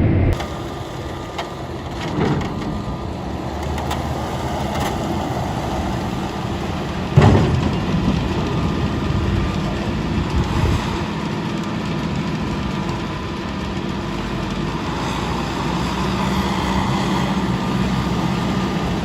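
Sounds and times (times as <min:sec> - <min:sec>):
machinery running: 0:00.0 - 0:19.0
loud knock: 0:07.2 - 0:08.3.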